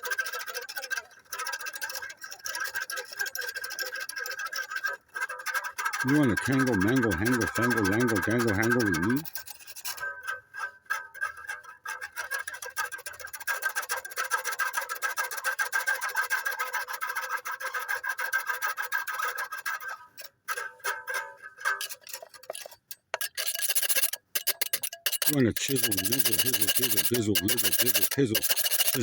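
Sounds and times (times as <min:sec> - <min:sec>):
cowbell shaken rapidly: 0:05.9 - 0:09.3, 0:23.3 - 0:29.0.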